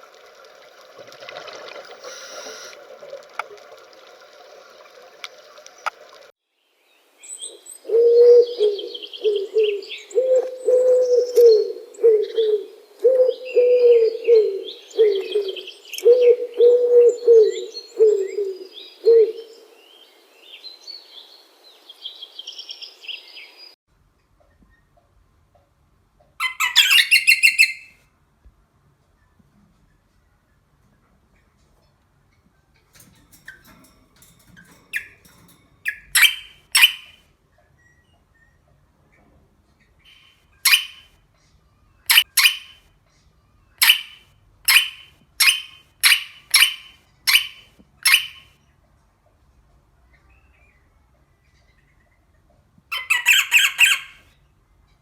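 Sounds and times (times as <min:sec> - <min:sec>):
small bird chirping and trilling: 0:26.4 - 0:27.9, 0:33.0 - 0:38.6, 0:40.0 - 0:41.1, 0:41.8 - 0:42.8, 0:43.5 - 0:48.5.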